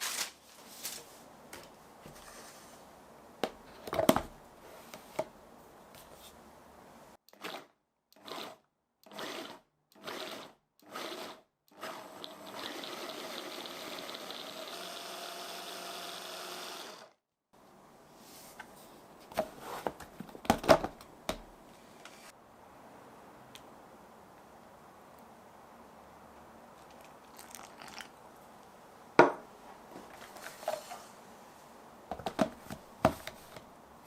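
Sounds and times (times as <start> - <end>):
food processor running: 8.3 - 17.1.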